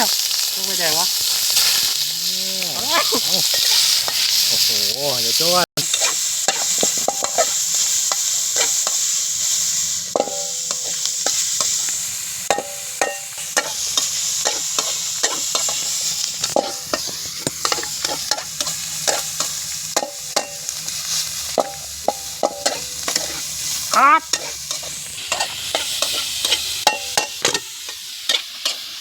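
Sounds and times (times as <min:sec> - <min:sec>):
oil sizzling in a hot pan: 0:00.0 - 0:29.0
utensil clanking on pan: 0:05.9 - 0:07.5, 0:10.2 - 0:11.0, 0:12.5 - 0:13.8, 0:14.4 - 0:20.7, 0:21.6 - 0:23.4, 0:24.4 - 0:27.7.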